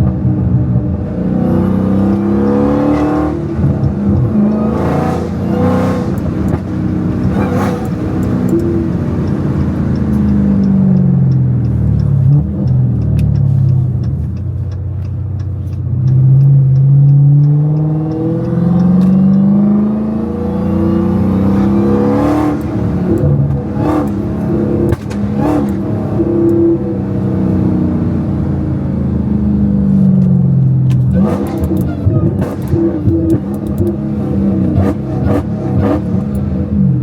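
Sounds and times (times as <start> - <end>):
car engine accelerating: 0.0 - 37.0
exhaust pops: 22.5 - 25.8.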